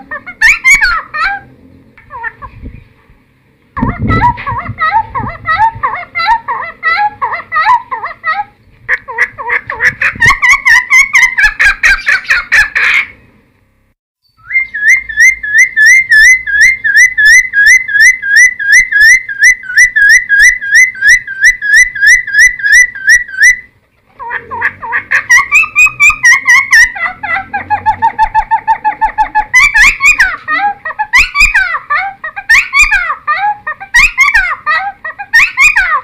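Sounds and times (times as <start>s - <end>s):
bird singing whistled notes: 14.2s - 23.7s.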